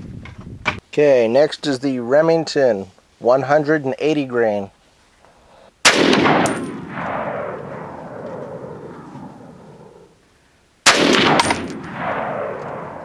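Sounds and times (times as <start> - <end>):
rifle shots with echo: 5.8 - 10.0, 10.8 - 13.0.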